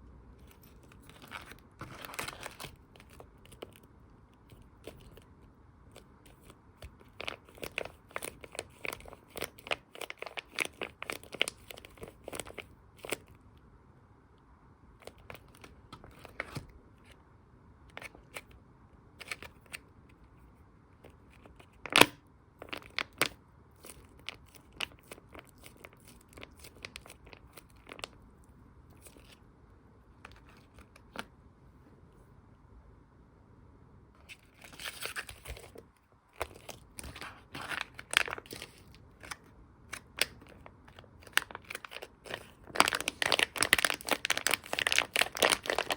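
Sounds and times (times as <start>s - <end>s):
crinkling and crackling clicks: 0.4s - 13.6s, 15.0s - 17.2s, 21.0s - 28.2s, 34.2s - 45.9s
squishy toys being squeezed: 41.2s - 45.9s.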